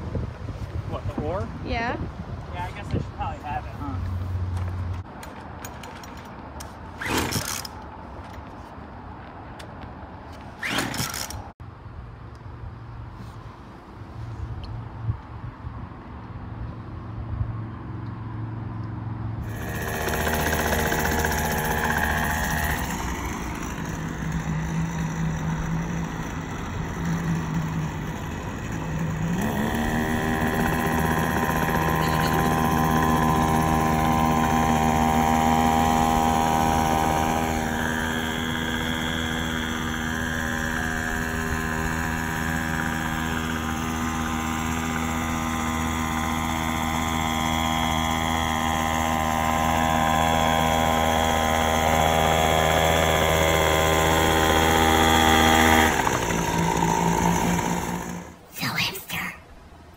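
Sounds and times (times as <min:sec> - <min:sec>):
small two-stroke engine running: 0:07.0 - 0:07.8, 0:10.6 - 0:11.5, 0:19.4 - 0:58.5.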